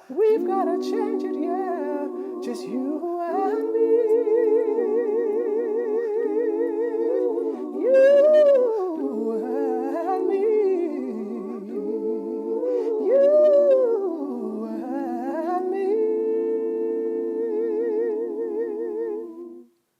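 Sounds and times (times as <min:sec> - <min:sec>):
wordless vocal harmony: 0:00.0 - 0:19.9.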